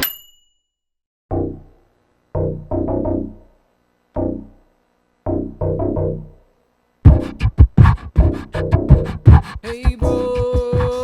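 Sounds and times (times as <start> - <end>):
drum-machine beat: 7.0 - 11.0.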